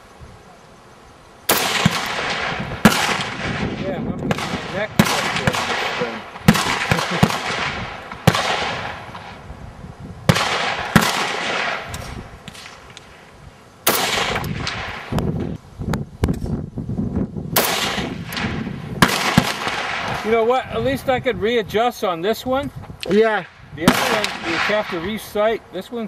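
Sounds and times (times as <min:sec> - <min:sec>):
rifle shots with echoing tail: 0:01.5 - 0:09.4, 0:10.3 - 0:15.2, 0:17.6 - 0:20.4, 0:23.4 - 0:25.2.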